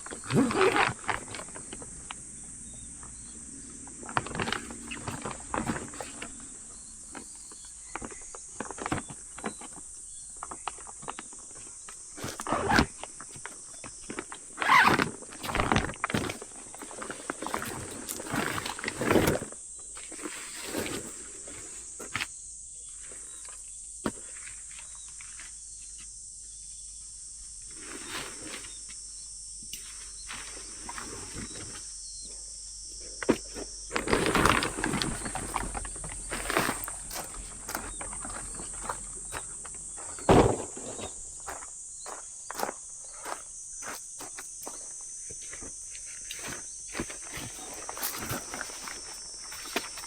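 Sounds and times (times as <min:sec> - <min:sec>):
crickets chirping: 0:00.0 - 0:50.0
rustling and knocking: 0:33.3 - 0:42.2.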